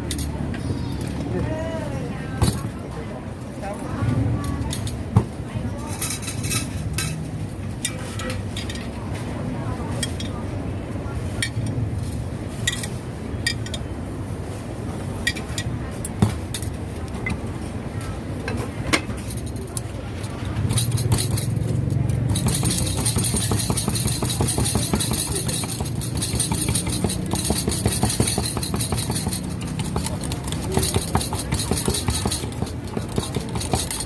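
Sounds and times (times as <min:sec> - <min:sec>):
glasses and utensils clinking: 0:20.6 - 0:34.0
engine running with fast ticking: 0:20.7 - 0:34.0.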